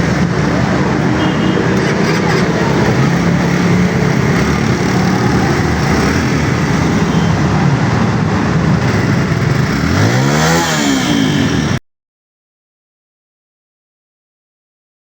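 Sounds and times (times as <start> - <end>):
motorcycle engine running: 0.0 - 11.8
wind and road rush: 0.0 - 11.8.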